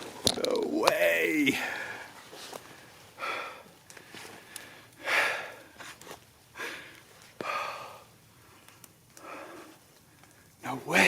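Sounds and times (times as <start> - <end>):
man breathing hard: 1.6 - 5.8, 6.5 - 8.2, 9.2 - 9.8.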